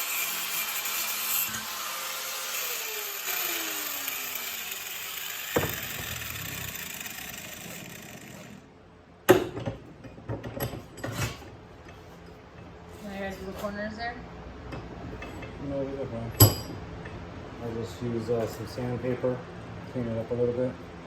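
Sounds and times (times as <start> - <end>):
power tool whine winding down: 0.0 - 8.7.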